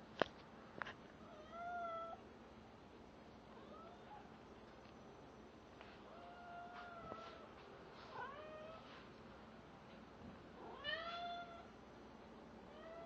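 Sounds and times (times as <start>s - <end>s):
cat meowing: 10.6s - 11.7s.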